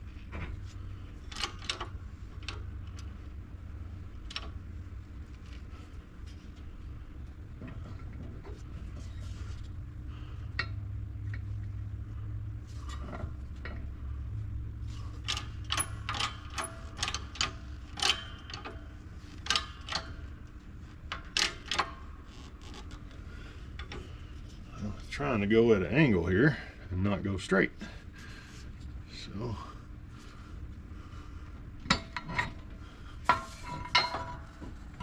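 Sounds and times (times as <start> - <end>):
low steady hum: 0.0 - 35.0
metallic clicks and clanks: 14.9 - 20.3, 21.1 - 23.0, 31.8 - 35.0.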